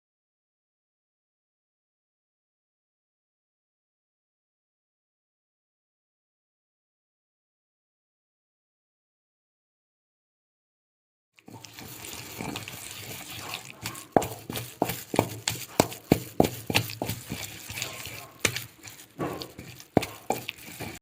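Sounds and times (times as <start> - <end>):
handling noise: 11.4 - 21.0.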